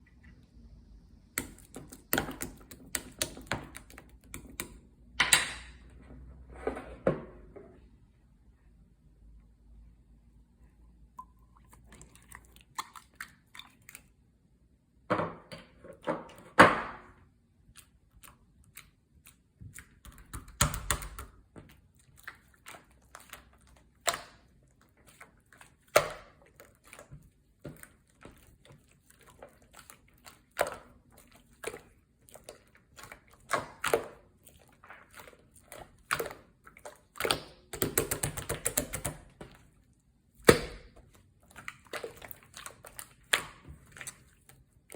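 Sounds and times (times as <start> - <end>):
slime squelching and popping: 1.3 - 5.6, 17.6 - 44.9.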